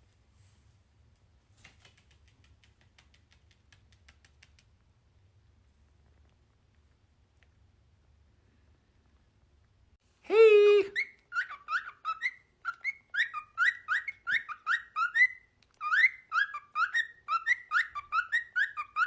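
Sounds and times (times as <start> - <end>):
cockatiel chirping: 10.9 - 19.0.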